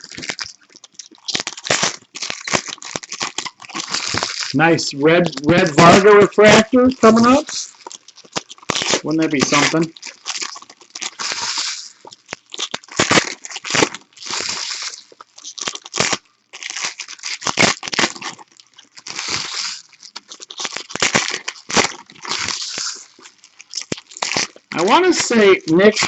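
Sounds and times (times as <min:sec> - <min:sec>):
trading cards rustling: 0:09.0 - 0:09.9, 0:24.7 - 0:26.0.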